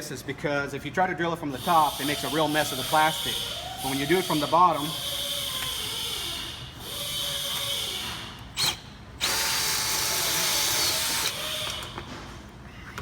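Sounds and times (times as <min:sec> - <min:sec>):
power drill cutting plastic: 0:01.6 - 0:12.0.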